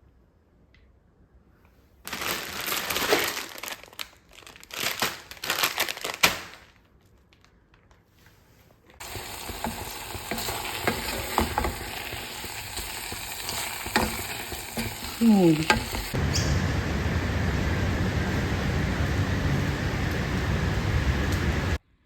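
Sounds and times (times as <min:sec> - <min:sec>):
food sizzling in a hot pan: 0:09.0 - 0:16.2.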